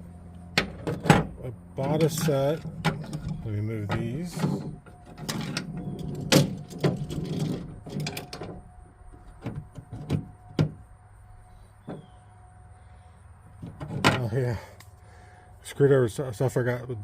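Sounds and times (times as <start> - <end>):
low steady hum: 0.0 - 17.0
hand tools knocking and clattering: 0.6 - 8.6.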